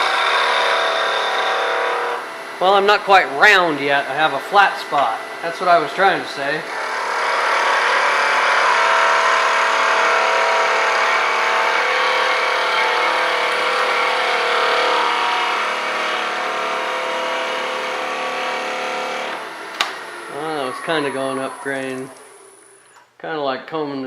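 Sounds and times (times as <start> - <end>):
turning tool shaving wood: 0.0 - 2.2, 6.7 - 19.4
wood lathe motor hum: 0.0 - 2.6, 6.6 - 23.0.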